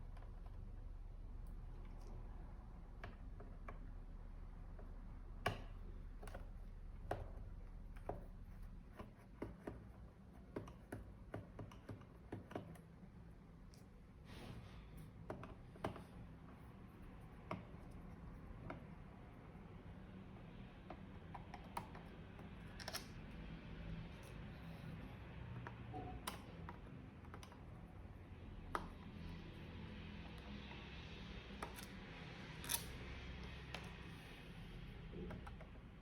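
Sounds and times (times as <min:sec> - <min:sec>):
clicks and taps of handling tools: 0:09.0 - 0:12.8.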